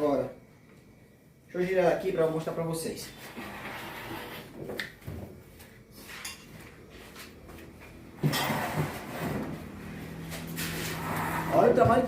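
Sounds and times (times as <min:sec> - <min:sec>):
washing machine scraping and knocking: 0:08.2 - 0:12.0.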